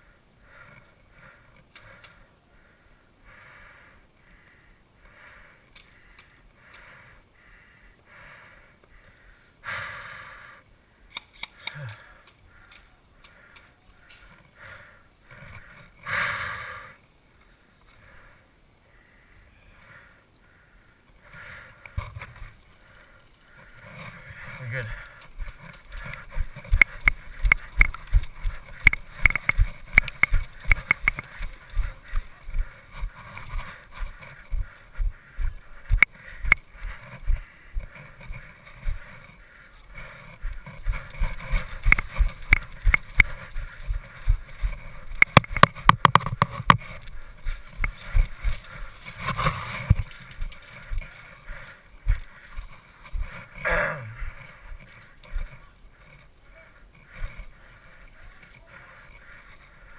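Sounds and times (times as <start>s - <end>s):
sharp clicks: 1.6s - 2.2s, 5.7s - 6.9s, 11.1s - 14.5s, 24.8s - 53.6s
footsteps running and walking: 24.9s - 53.6s.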